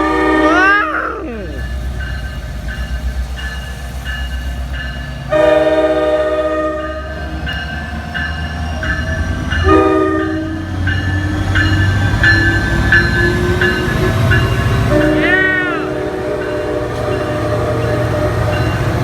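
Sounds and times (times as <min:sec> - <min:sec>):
locomotive horn blasts: 0:00.0 - 0:01.2, 0:05.3 - 0:07.2, 0:09.6 - 0:10.7, 0:14.9 - 0:18.5.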